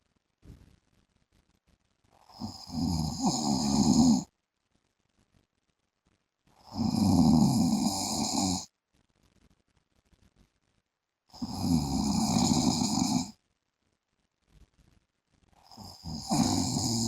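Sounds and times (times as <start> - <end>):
man snoring: 2.3 - 4.3, 6.6 - 8.7, 11.3 - 13.3, 15.7 - 17.0.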